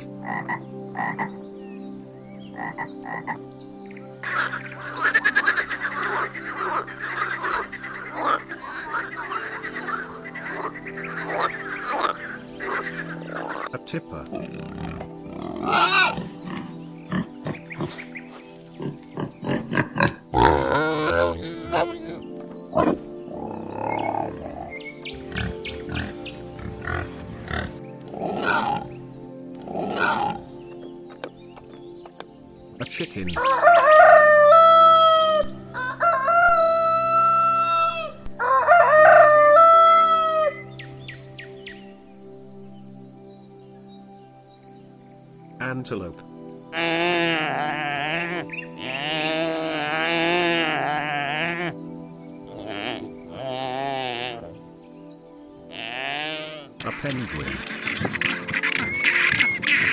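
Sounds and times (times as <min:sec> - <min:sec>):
background music: 0:00.0 - 0:59.9
frogs croaking: 0:00.0 - 0:59.9
animal grunting calls: 0:04.2 - 0:30.6, 0:46.7 - 0:51.8, 0:52.5 - 0:54.6, 0:55.7 - 0:59.9.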